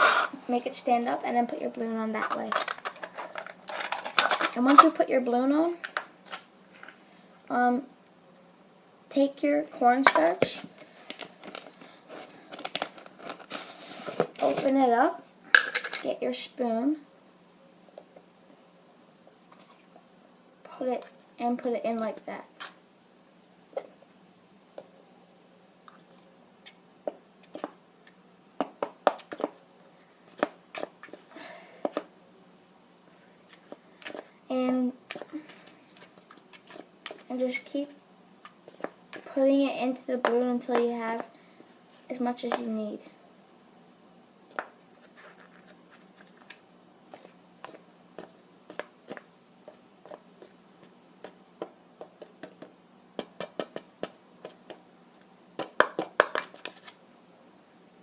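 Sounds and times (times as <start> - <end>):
spoon scooping cornstarch: 35.1 - 37.3.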